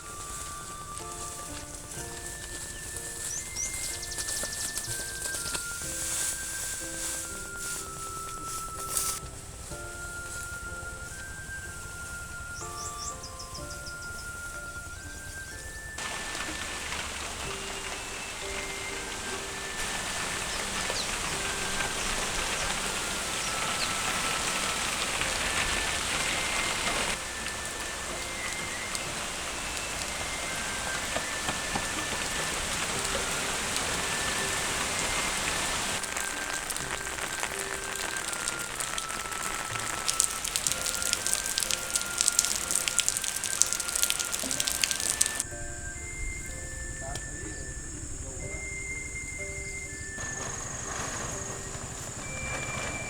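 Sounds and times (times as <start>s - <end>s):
soft background music: 0.0s - 53.0s
steady rain: 0.0s - 53.0s.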